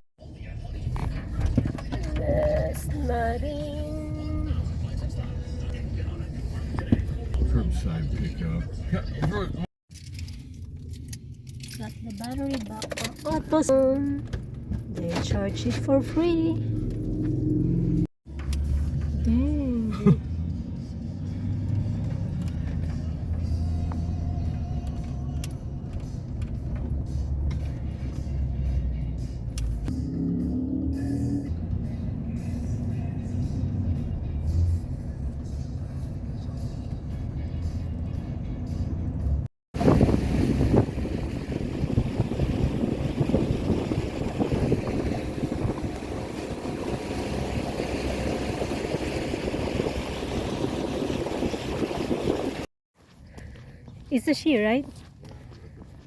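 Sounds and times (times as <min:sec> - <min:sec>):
road and engine rumble: 0:00.0 - 0:56.0
motorboat engine rumbling: 0:39.8 - 0:52.7
wind buffeting microphone: 0:39.8 - 0:52.7.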